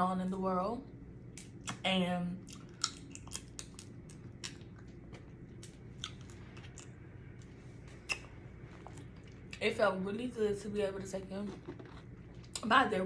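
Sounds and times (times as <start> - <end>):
person chewing and crunching crab: 2.4 - 9.6, 11.5 - 12.6.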